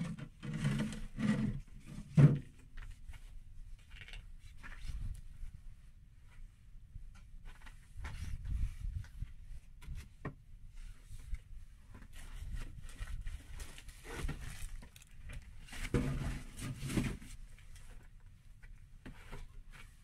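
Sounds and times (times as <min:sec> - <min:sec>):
rustling handling noise: 0:10.8 - 0:20.0.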